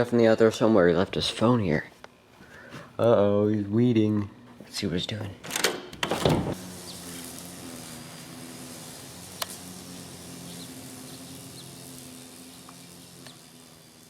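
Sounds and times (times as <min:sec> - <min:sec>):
steady low hum: 0:06.4 - 0:14.0.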